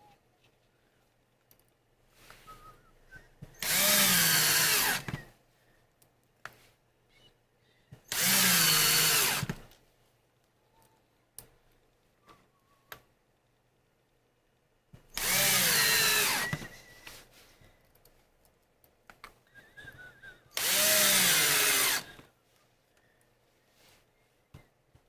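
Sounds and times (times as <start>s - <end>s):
electric drill driving screws: 3.6s - 5.2s, 8.1s - 9.6s, 15.1s - 16.7s, 20.6s - 22.2s.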